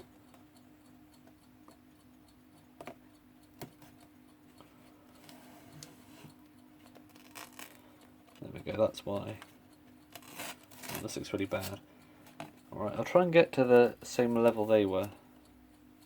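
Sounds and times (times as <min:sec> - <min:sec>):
steady low hum: 0:00.0 - 0:16.0
adhesive tape rustling: 0:07.0 - 0:07.8, 0:10.1 - 0:11.8.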